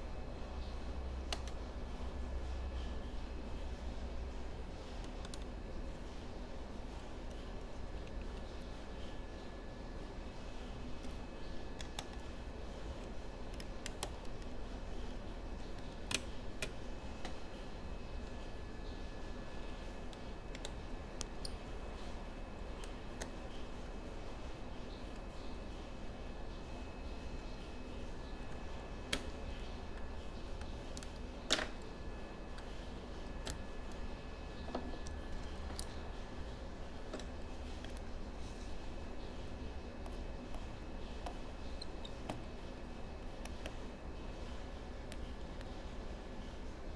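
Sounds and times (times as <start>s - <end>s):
light clicks and taps of tools: 1.3s - 1.6s, 5.0s - 5.5s, 11.8s - 12.3s, 15.6s - 17.4s, 19.8s - 23.6s, 40.0s - 42.6s, 43.2s - 43.9s.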